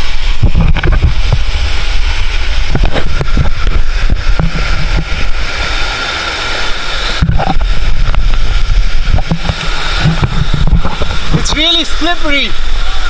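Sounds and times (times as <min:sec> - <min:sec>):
wind buffeting microphone: 0:00.0 - 0:05.6, 0:07.1 - 0:11.7
rushing water: 0:00.0 - 0:13.0.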